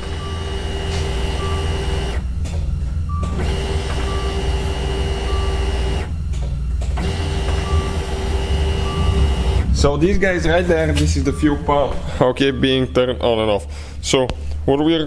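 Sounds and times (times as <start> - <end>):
electric fuel pump whining: 0.0 - 14.7
constant low rumble: 0.0 - 15.0.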